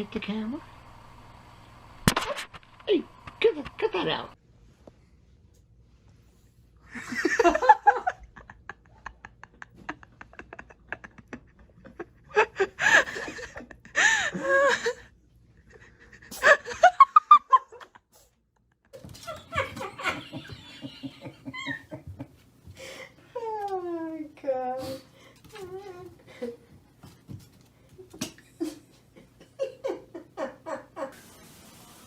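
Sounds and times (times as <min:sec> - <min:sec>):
people laughing: 0:06.9 - 0:15.1, 0:18.9 - 0:23.0, 0:28.4 - 0:31.3.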